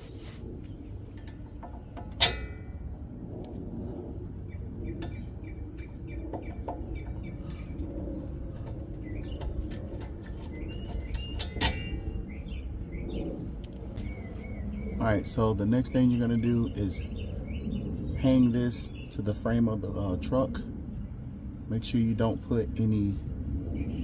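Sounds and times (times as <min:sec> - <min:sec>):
birds chirping: 0:00.0 - 0:24.0.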